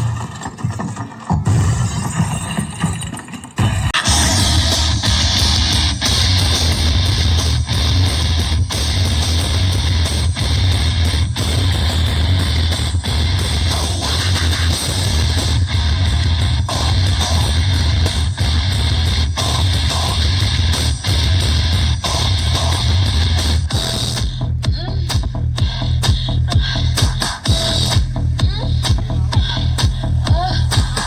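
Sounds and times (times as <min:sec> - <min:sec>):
rock music: 0:01.4 - 0:31.0
electric guitar: 0:03.6 - 0:24.2
heavy bass: 0:03.6 - 0:31.0.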